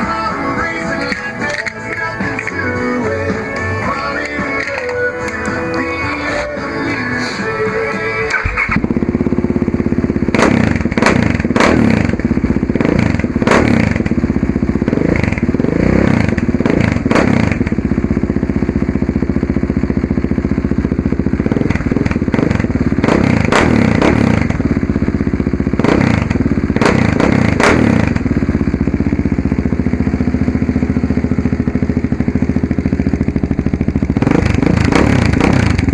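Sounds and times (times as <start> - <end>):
engine throttle blips: 0.0 - 35.9
motorcycle engine idling: 0.0 - 35.9
motorcycle engine starting: 0.0 - 35.9.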